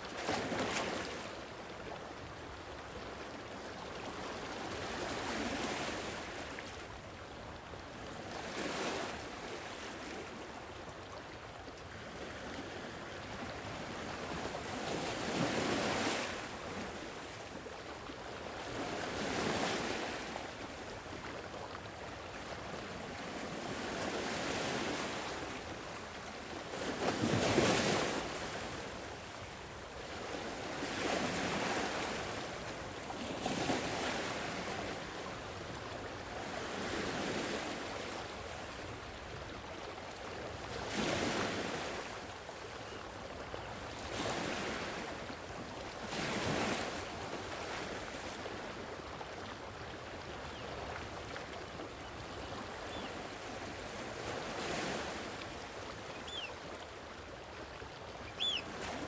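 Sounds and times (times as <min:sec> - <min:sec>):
sea waves breaking on shore: 0:43.6 - 0:59.0.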